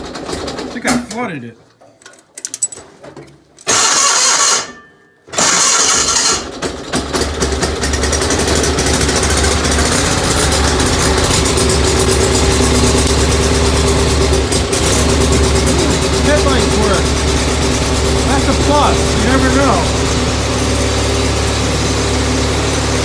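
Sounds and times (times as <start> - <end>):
garden tractor engine cranking: 3.4 - 4.7, 5.3 - 23.0
engine running steadily: 7.1 - 23.0.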